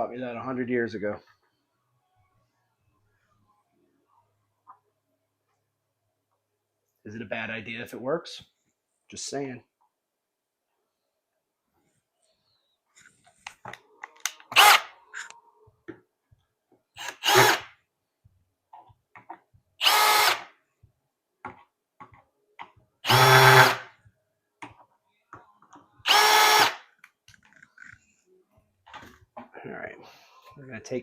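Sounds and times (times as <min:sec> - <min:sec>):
power drill motor whine: 0:14.5 - 0:14.9, 0:17.0 - 0:17.6, 0:19.8 - 0:20.4, 0:23.0 - 0:23.8, 0:26.1 - 0:26.8.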